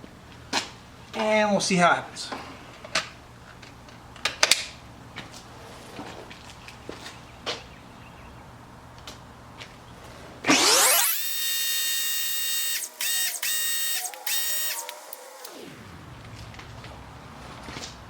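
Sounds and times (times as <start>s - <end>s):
pressure washer motor whine: 10.4s - 16.3s.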